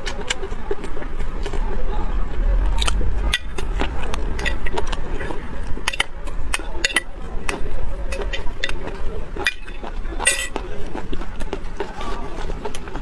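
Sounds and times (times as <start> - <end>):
low rumble: 0.0 - 10.2
chewing and biting: 8.2 - 13.0.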